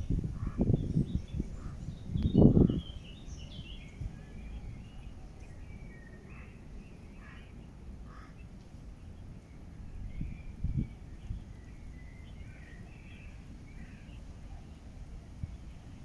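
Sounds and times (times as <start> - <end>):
small birds chirping faintly: 0.0 - 16.0.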